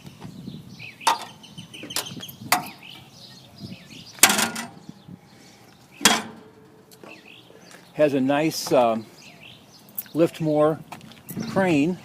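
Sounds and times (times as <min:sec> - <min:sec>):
metal knocks and clanks: 0:04.2 - 0:04.8, 0:06.0 - 0:06.8.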